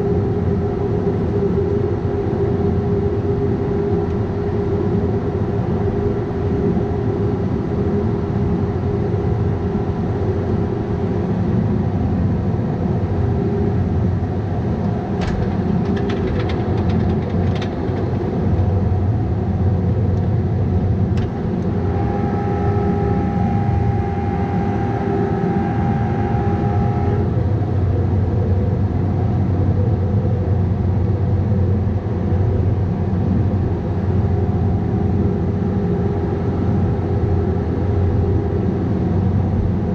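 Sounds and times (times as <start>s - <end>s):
mini excavator running: 15.1s - 19.0s
high whine: 20.7s - 29.2s.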